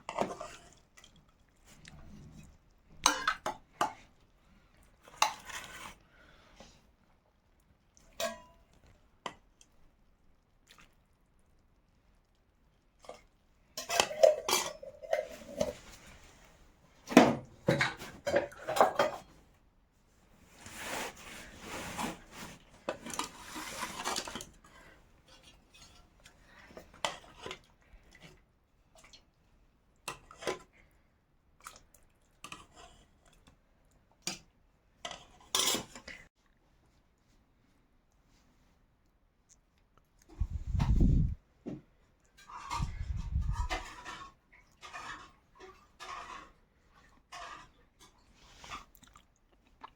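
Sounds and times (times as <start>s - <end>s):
metal utensils and dishes clinking: 3.0s - 4.0s, 8.1s - 8.6s, 13.8s - 16.0s, 17.6s - 19.3s, 35.1s - 36.3s, 42.4s - 46.6s.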